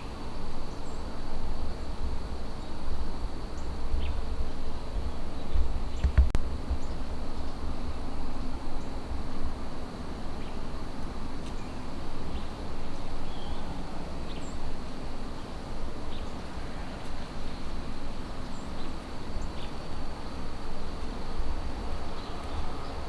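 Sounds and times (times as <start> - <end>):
wind rumble on microphone: 0.0 - 9.8.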